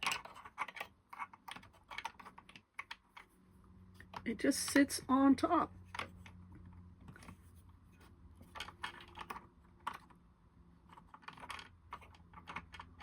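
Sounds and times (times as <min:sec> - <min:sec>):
low steady hum: 0:03.2 - 0:12.6.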